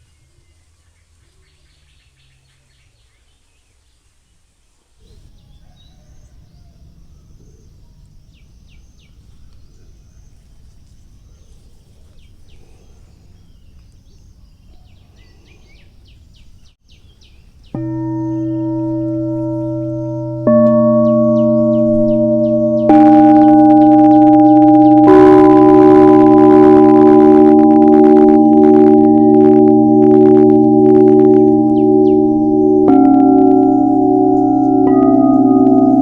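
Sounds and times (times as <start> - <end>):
birds chirping: 17.8 - 36.0
crystal singing bowl ringing: 17.8 - 36.0.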